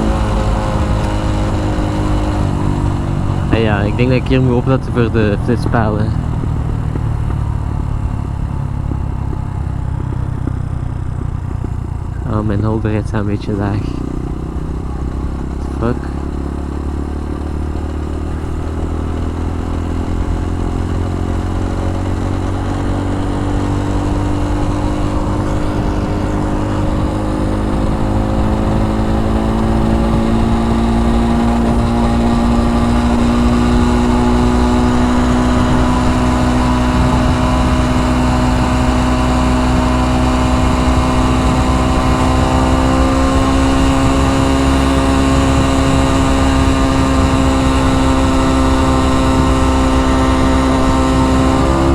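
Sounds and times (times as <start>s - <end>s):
motorbike engine accelerating: 0.0s - 51.9s
wind rumble on microphone: 18.4s - 51.9s.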